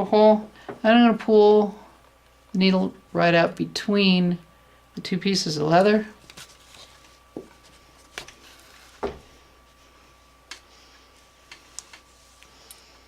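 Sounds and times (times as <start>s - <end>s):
faint high hum: 0.0s - 13.0s.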